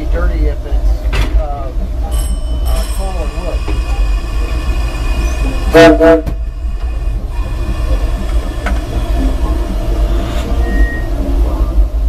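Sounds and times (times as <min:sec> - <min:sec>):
locomotive low rumble: 0:00.0 - 0:12.0
steam whistle blasts: 0:05.1 - 0:09.4.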